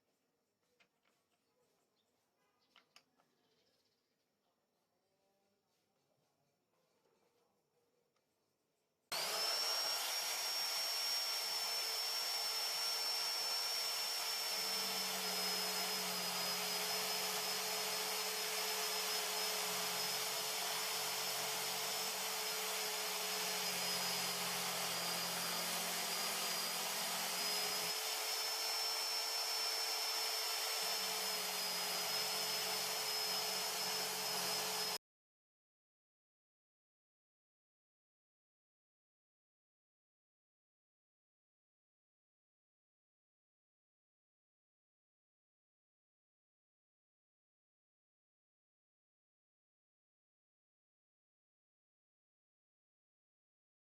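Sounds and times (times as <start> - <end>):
electric drill whining: 9.1 - 35.0.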